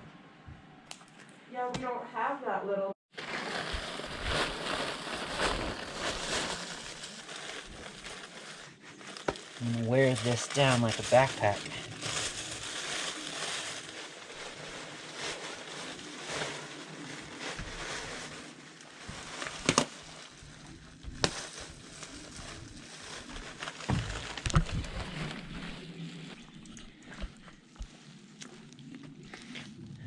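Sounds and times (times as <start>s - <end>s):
plastic bag rustling: 3.1s - 26.7s.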